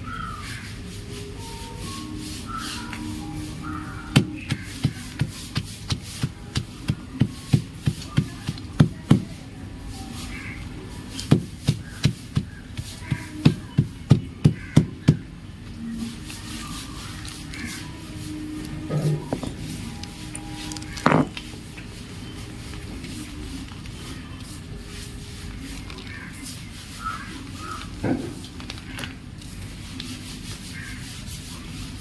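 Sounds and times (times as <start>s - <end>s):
chalk crunching: 1.8s - 8.9s.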